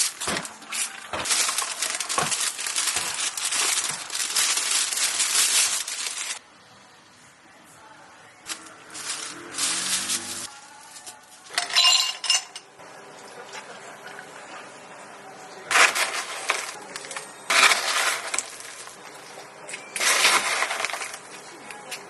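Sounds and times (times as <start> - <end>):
glassware clinking: 11.5 - 12.7.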